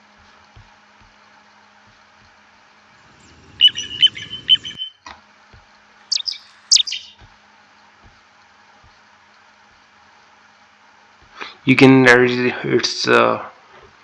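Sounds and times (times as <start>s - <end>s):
recorded bird calls: 3.0s - 5.1s, 6.1s - 7.2s.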